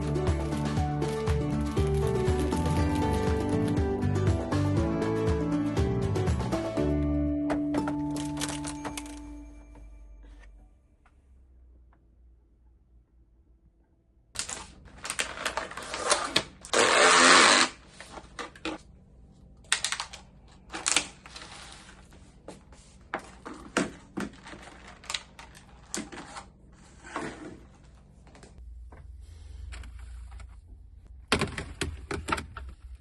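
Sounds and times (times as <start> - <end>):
plastic packaging rustling: 24.2 - 26.4.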